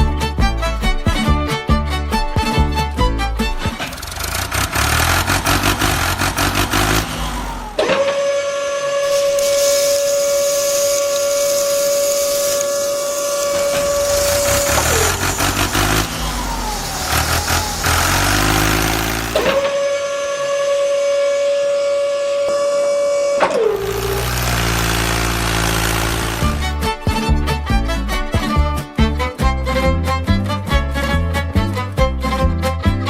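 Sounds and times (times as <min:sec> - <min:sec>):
engine running with pulsing throb: 0:03.4 - 0:08.2, 0:08.8 - 0:27.4
steady whistle-like tone: 0:08.2 - 0:17.1, 0:19.5 - 0:24.3.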